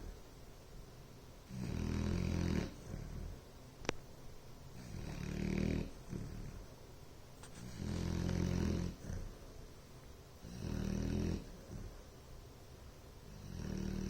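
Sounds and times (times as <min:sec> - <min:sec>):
dog snoring: 0:01.5 - 0:03.4, 0:04.7 - 0:06.7, 0:07.5 - 0:09.4, 0:10.4 - 0:12.0, 0:13.3 - 0:14.0.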